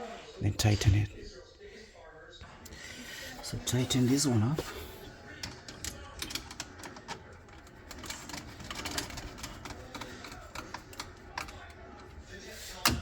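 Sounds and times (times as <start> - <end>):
plastic and metal parts clicking: 5.4 - 12.1.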